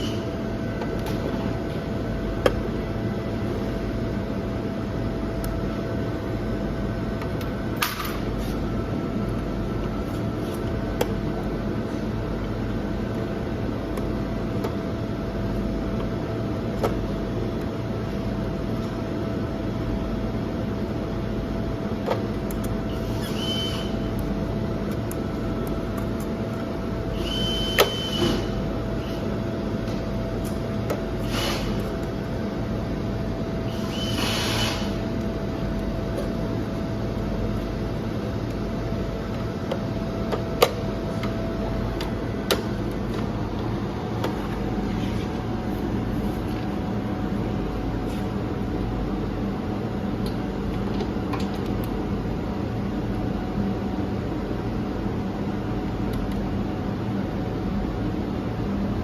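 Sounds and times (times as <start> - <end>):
welder buzzing hum: 19.7 - 49.9.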